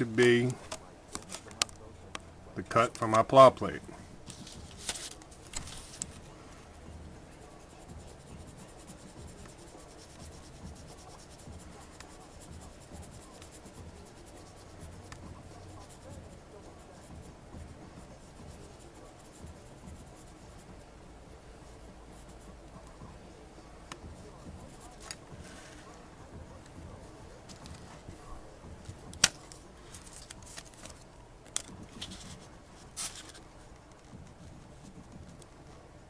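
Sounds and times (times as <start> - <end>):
pencil scratching: 4.3 - 20.9, 21.7 - 22.9, 24.0 - 31.0.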